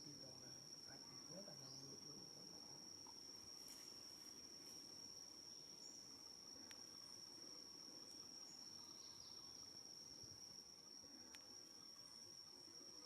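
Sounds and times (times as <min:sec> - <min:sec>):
faint click: 0:06.6 - 0:06.8, 0:11.3 - 0:11.5.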